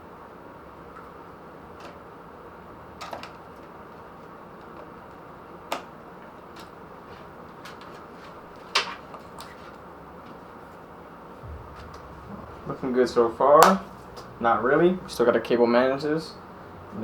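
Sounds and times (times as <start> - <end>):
steady background hiss: 11.4 - 17.0.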